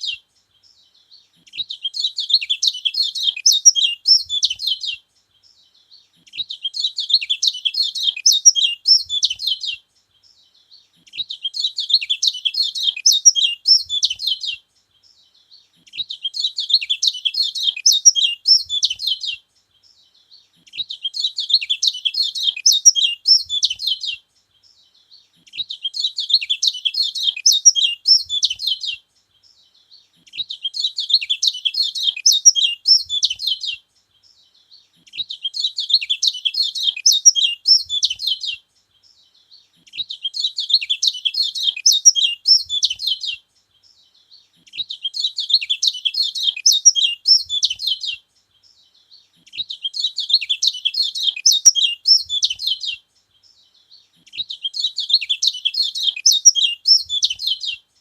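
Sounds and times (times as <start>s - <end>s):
bird twittering: 1.4s - 5.0s, 6.2s - 9.8s, 11.0s - 14.6s, 15.8s - 19.4s, 20.6s - 24.2s, 25.4s - 29.0s, 30.2s - 33.8s, 35.0s - 38.6s, 39.8s - 43.4s, 44.2s - 48.2s, 49.0s - 57.8s.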